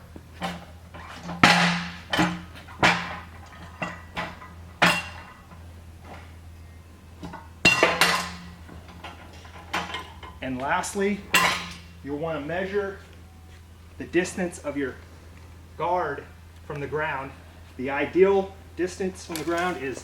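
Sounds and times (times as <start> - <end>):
metal clanks and knocks: 0.0 - 12.9.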